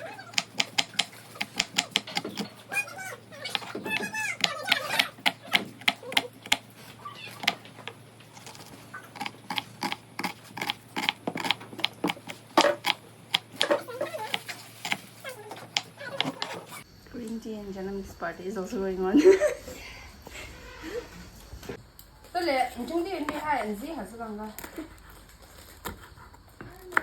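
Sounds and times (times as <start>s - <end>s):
sharp clicks and taps: 0.3s - 2.5s, 3.5s - 6.7s.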